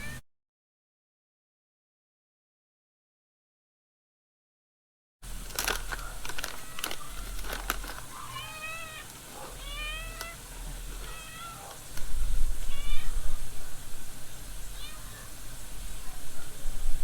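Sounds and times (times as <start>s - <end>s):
cat meowing: 0.0s - 0.2s, 6.0s - 11.9s, 12.5s - 13.5s, 14.7s - 15.4s.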